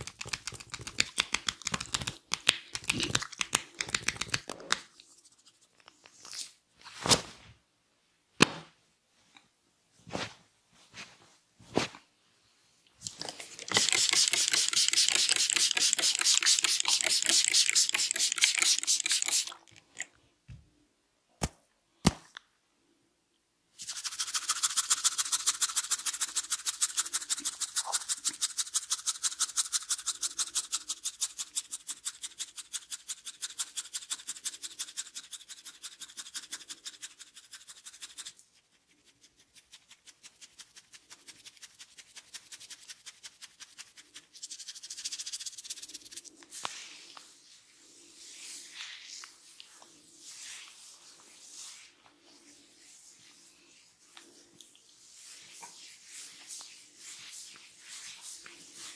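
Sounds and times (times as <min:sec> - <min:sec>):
hands rubbing hair: 0:00.0 - 0:06.2, 0:13.1 - 0:20.1, 0:23.8 - 0:30.8, 0:37.1 - 0:58.9.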